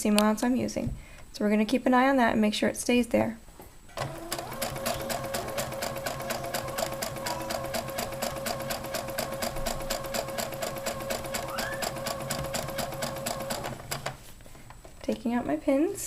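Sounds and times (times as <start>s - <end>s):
sewing machine stitching: 4.0s - 14.2s.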